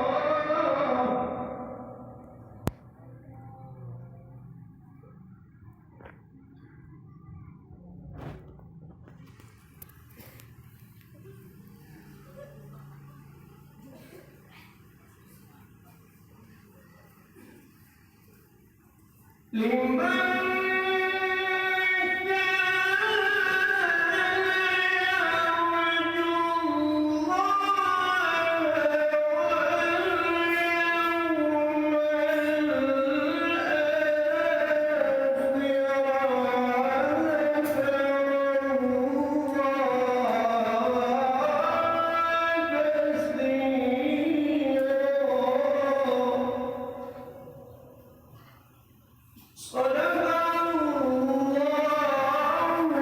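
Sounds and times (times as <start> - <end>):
person reciting melodiously: 0.0 - 2.6, 19.5 - 48.0, 49.6 - 53.0.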